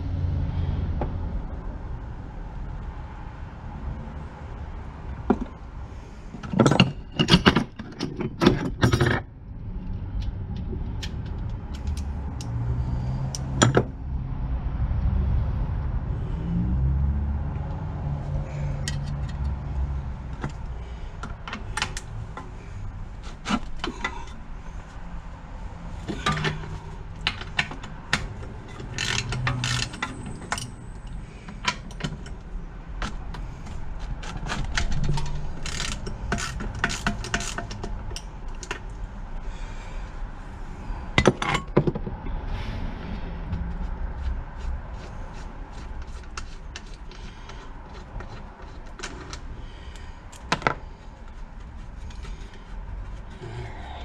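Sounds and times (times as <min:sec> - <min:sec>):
metal tools clinking on engine parts: 0:06.4 - 0:09.2, 0:26.0 - 0:32.4, 0:34.3 - 0:38.9.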